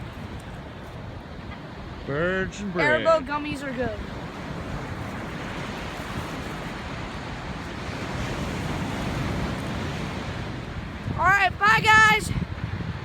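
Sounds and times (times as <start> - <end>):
ocean surf rushing: 0.0 - 13.0
wind buffeting microphone: 0.0 - 13.0.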